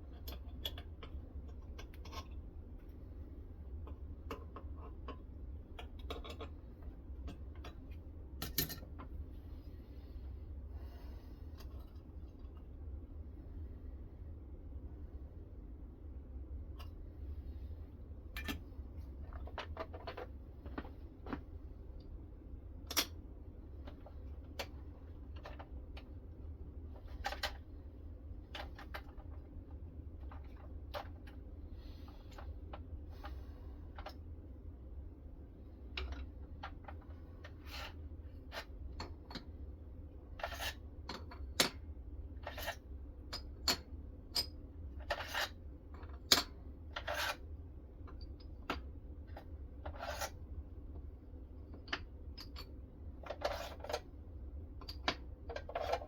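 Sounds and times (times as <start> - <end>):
light clicks and scrapes: 40.4 - 40.8, 47.0 - 47.4, 49.3 - 50.4, 52.4 - 54.1, 54.8 - 56.0.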